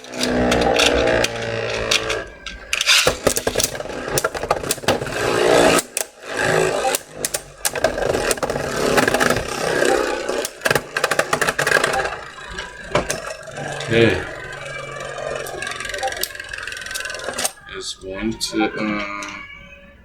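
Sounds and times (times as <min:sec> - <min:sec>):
tops clattering against plastic: 0:00.0 - 0:17.7
spinning tops whirring: 0:00.0 - 0:18.5.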